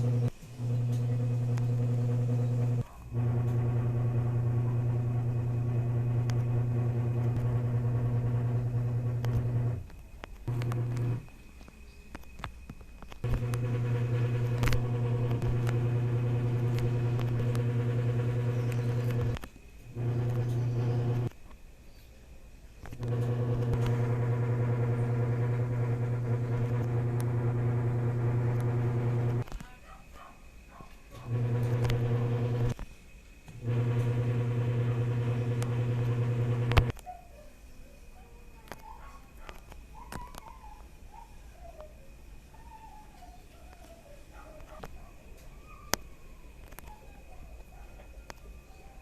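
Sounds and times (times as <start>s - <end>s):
steady machine hum: 0.0s - 11.3s, 13.2s - 21.3s, 22.9s - 29.5s, 31.2s - 32.8s, 33.5s - 36.9s
faint clicks: 6.2s - 21.6s.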